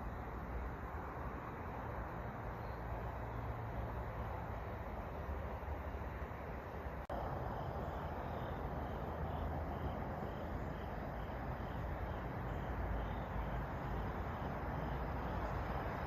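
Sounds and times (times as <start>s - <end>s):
faint insect chirps: 0.0s - 16.0s
low rumble and hiss: 0.0s - 16.0s.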